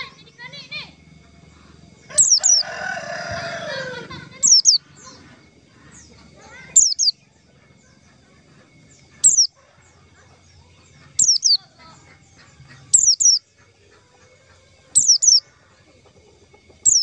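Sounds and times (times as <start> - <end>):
bird calling high notes: 0.0 - 15.8.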